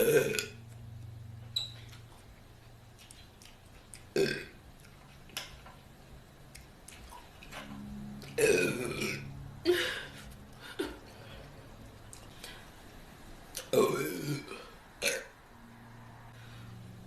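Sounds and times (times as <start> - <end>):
woman burping: 0.0 - 0.6, 8.4 - 11.1, 13.7 - 15.4.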